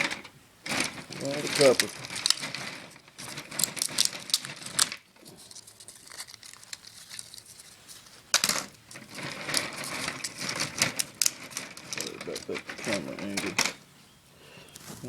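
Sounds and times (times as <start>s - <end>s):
copper wire clinking and rustling: 8.4s - 13.8s.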